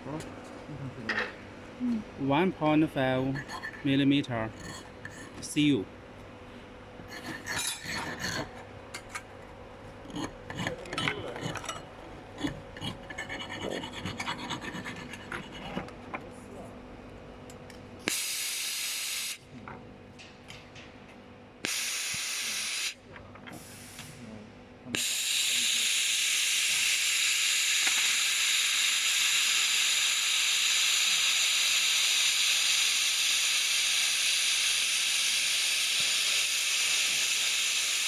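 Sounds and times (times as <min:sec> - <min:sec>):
laser welder hissing: 0:18.0 - 0:19.4, 0:21.6 - 0:23.0, 0:23.6 - 0:24.2, 0:24.9 - 0:38.0.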